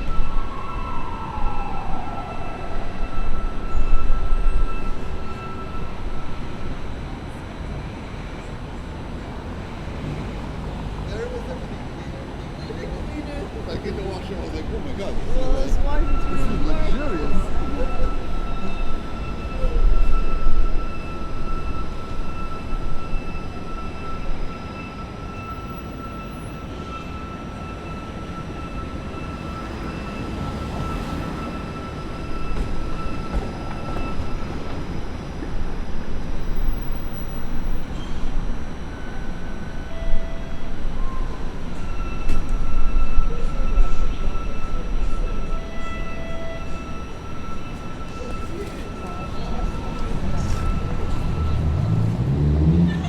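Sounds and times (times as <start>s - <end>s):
low traffic rumble: 0.0s - 26.8s, 27.4s - 53.0s
vehicle passing close: 50.7s - 53.0s.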